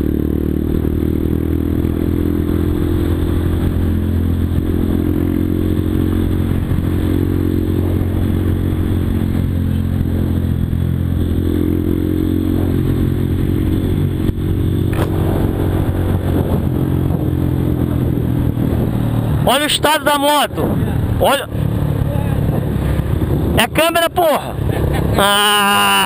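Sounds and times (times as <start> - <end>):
motorcycle engine running: 0.0 - 26.0
sharp click: 14.9 - 15.2.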